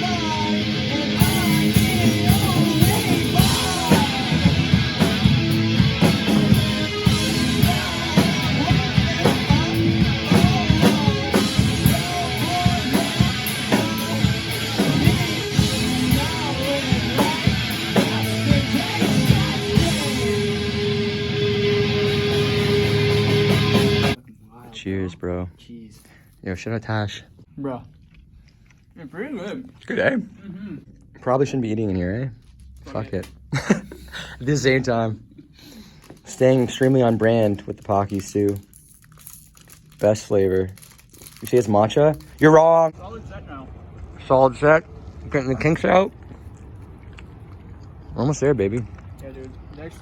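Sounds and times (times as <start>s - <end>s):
drum kit: 0.0s - 24.2s
electric guitar: 0.0s - 24.2s
person singing: 0.0s - 24.2s.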